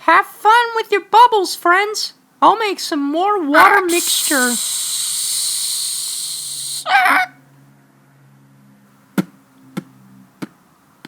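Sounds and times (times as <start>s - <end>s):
steady hiss: 3.8s - 6.9s.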